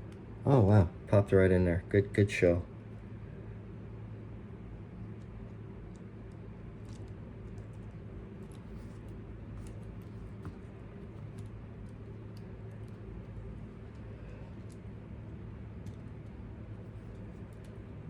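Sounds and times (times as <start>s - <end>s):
steady low hum: 0.0s - 18.0s
small parts clicking and tapping: 5.1s - 18.0s.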